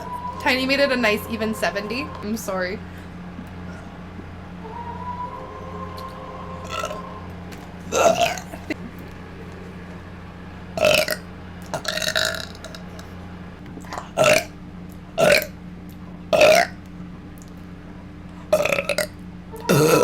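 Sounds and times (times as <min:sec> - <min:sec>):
person burping loudly: 0:07.9 - 0:08.7, 0:10.8 - 0:11.2, 0:11.8 - 0:12.8, 0:14.2 - 0:14.5, 0:15.2 - 0:15.5, 0:16.4 - 0:16.7, 0:18.5 - 0:19.1, 0:19.7 - 0:20.0.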